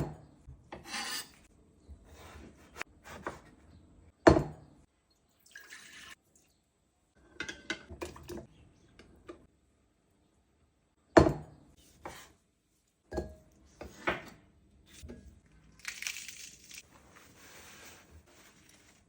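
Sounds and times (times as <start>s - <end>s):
water drips and splashes: 5.0s - 6.6s.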